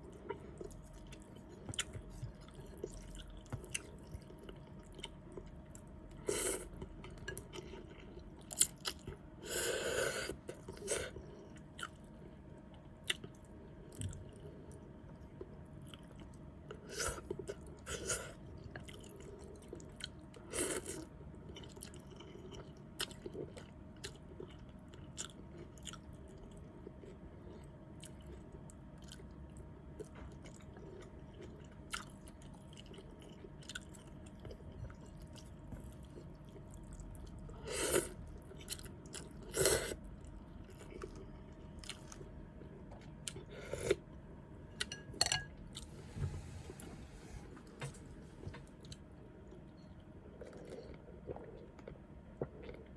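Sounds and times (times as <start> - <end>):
person chewing noodle soup: 0.0 - 12.4, 13.0 - 45.9, 48.8 - 52.9.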